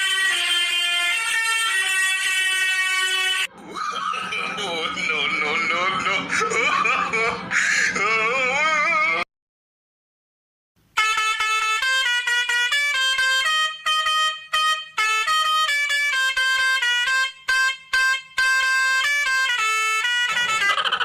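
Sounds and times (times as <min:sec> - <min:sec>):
truck musical horn tune: 0:00.0 - 0:03.5, 0:10.9 - 0:21.0.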